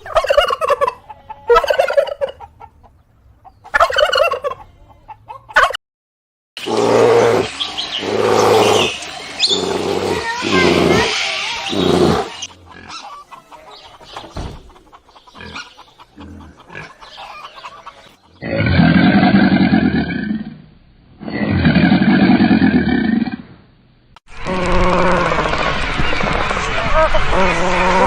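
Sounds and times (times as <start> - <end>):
loud long animal calls: 6.6 - 13.2, 24.3 - 28.0.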